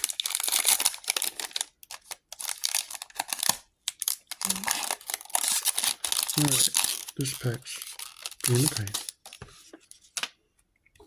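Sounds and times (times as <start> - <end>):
foil wrapper crinkling and tearing: 0.0 - 9.4.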